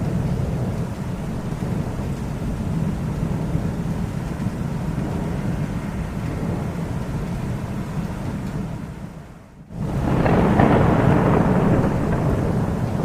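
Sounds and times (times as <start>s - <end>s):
thunder rumbling: 0.0s - 13.0s.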